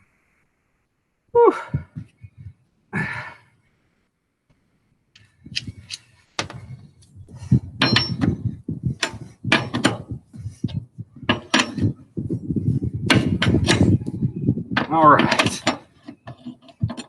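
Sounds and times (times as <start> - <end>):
lug wrench clanking on lug nut: 7.8 - 8.4, 9.0 - 10.1, 11.3 - 12.0, 13.1 - 14.0, 14.8 - 17.0.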